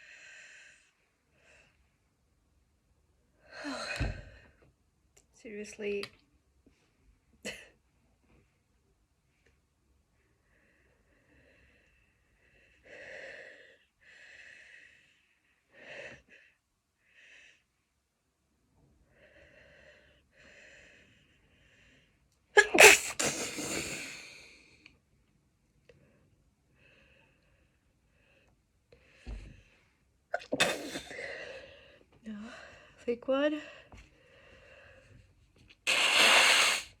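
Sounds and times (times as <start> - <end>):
person sneezing: 22.6 - 24.2, 30.4 - 31.2, 35.9 - 37.0
wheezy in-breaths: 35.8 - 37.0.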